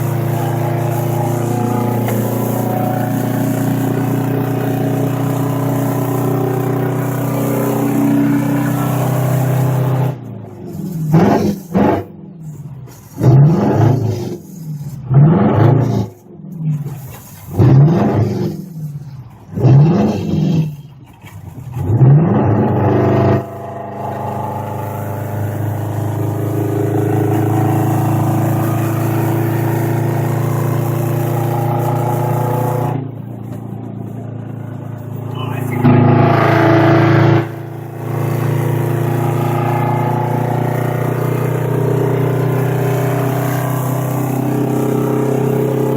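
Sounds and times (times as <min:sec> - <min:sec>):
diesel engine revving: 0:00.0 - 0:45.9.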